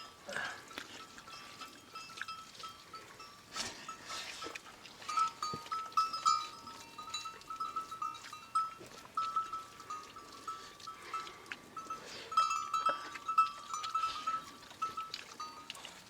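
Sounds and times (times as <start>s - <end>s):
sheep bells clinking: 0.0s - 16.0s.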